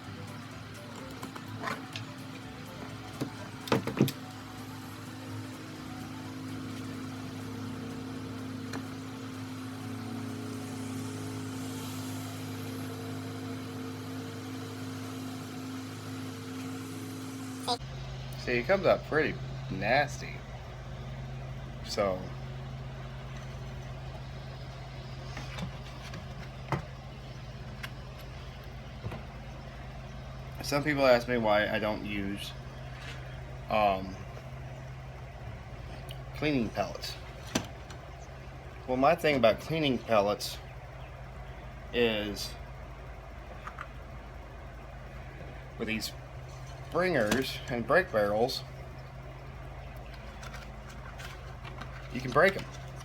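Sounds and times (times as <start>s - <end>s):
machine hum: 0.0s - 53.0s
handling clicks and knocks: 0.9s - 4.4s, 46.5s - 47.9s, 49.8s - 53.0s.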